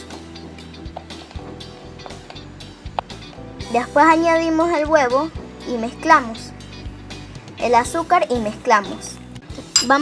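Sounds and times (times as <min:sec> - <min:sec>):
background music: 0:00.0 - 0:10.0.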